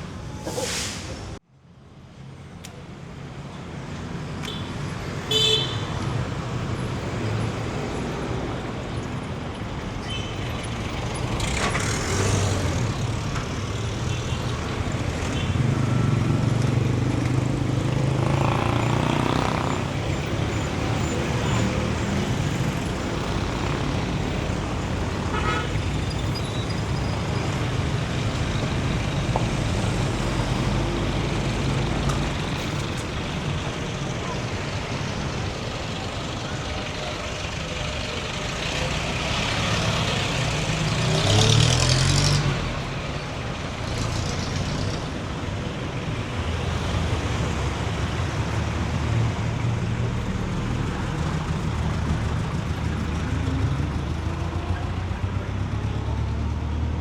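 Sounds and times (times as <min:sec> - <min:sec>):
vehicle engines passing: 0:02.9 - 0:57.0
car horn toot: 0:25.3 - 0:25.8.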